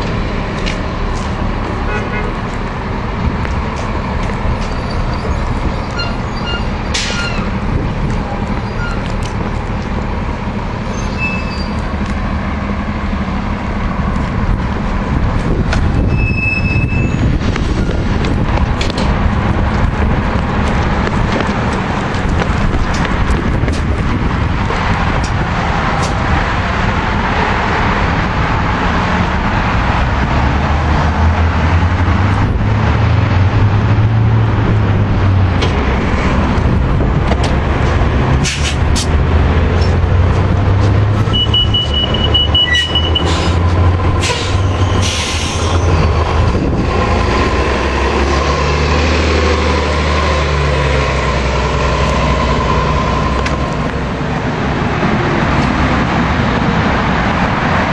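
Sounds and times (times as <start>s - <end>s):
bus engine humming: 0.0s - 57.9s
air brake hisses: 44.2s - 45.9s.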